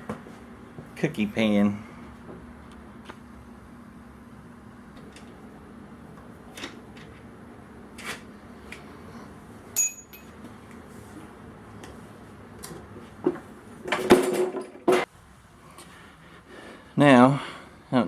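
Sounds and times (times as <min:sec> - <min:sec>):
metal clinks: 0:09.8 - 0:10.4.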